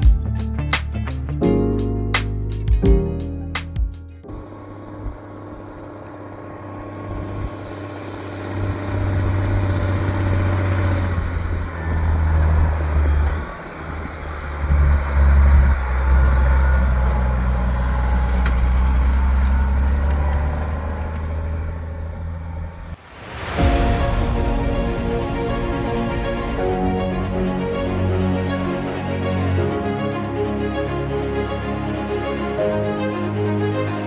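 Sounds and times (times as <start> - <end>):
heavy vehicle engine running: 4.2 - 34.0.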